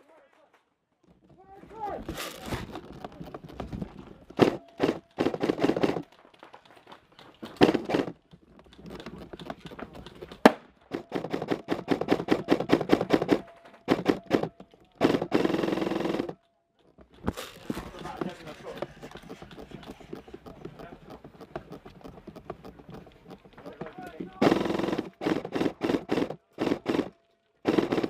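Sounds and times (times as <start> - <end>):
airsoft gun full-auto bursts: 4.3 - 6.2, 7.4 - 8.2, 8.8 - 16.4, 17.2 - 28.0.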